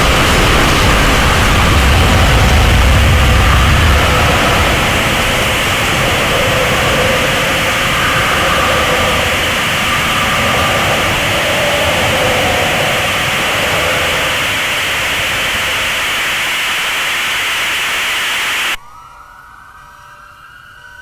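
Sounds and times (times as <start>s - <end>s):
loud rushing static noise: 0.0s - 18.8s.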